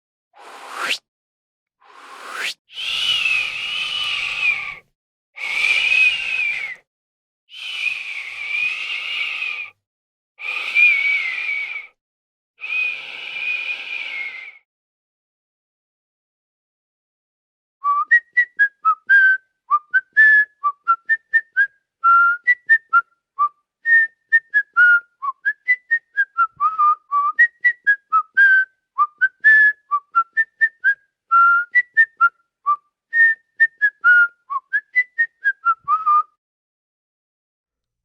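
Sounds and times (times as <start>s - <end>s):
whistling: 2.2s - 4.8s, 5.4s - 6.9s, 7.5s - 9.8s, 10.4s - 12.0s, 12.6s - 14.7s, 17.8s - 36.4s.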